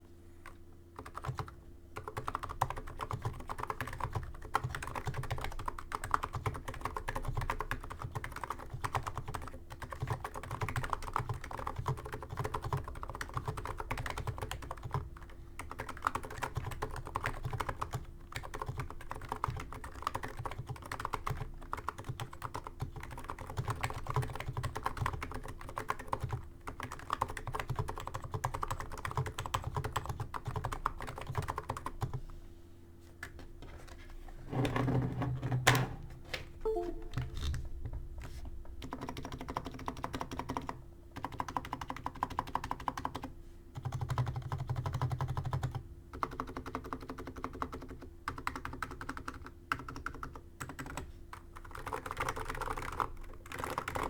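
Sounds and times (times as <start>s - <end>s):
keyboard typing: 0.4s - 32.2s, 36.6s - 37.7s, 38.8s - 54.0s.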